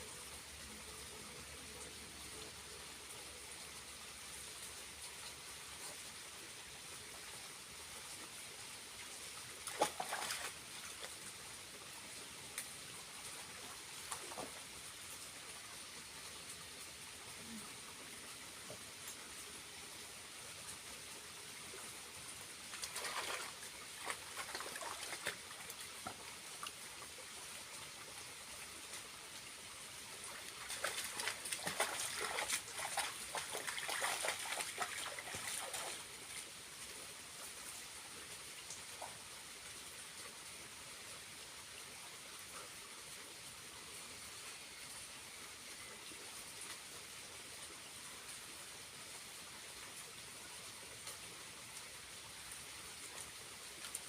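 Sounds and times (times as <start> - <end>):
small waterfall trickling: 0.0 - 54.0
water splashing: 9.6 - 11.1, 22.7 - 26.2, 30.4 - 36.1.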